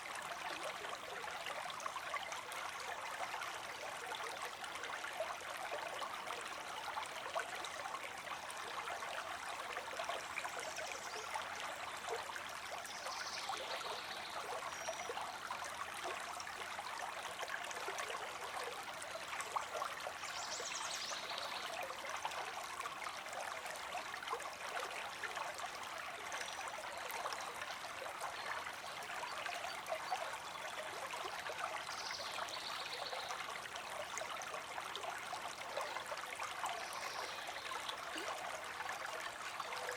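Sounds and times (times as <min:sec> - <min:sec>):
creek water trickling over stones: 0:00.0 - 0:39.9.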